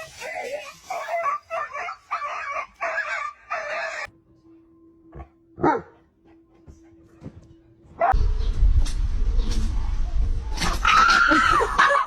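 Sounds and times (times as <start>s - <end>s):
dog barking: 5.6s - 6.0s.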